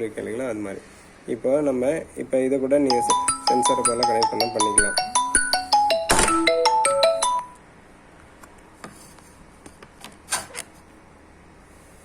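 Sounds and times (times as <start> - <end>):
electronic chime melody: 2.9 - 7.6.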